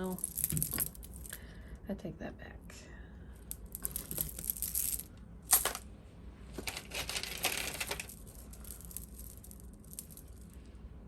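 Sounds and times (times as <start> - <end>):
beads clicking and rattling: 0.0 - 1.4, 3.4 - 5.8, 6.6 - 10.6.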